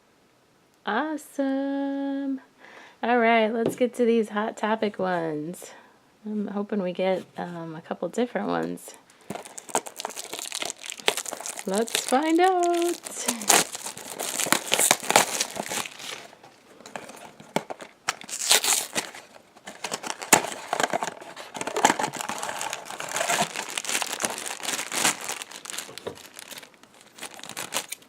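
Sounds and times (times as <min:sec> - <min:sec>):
sharp crackles of wrapper: 0:09.3 - 0:16.4, 0:17.6 - 0:28.0
cardboard and wrapper tearing: 0:09.3 - 0:28.0.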